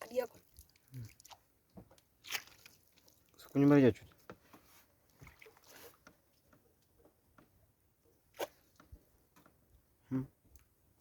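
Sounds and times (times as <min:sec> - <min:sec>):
soft rustle: 0:04.1 - 0:06.5.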